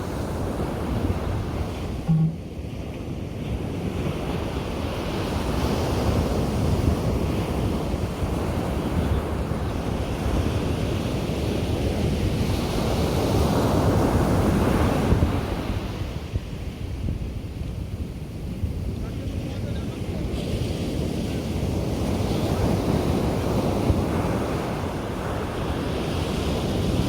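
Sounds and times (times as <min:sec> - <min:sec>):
ocean surf breaking on beach: 0:18.1 - 0:27.0.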